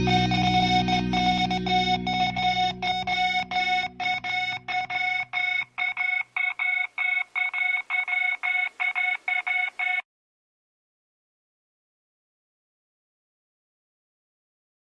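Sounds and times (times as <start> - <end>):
low backing music: 0.0 - 5.6
electronic beeping tones: 0.0 - 10.0.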